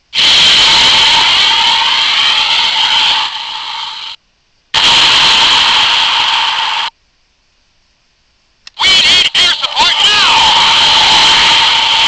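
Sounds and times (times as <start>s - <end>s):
electronic jet engine sound effect: 4.8s - 6.9s.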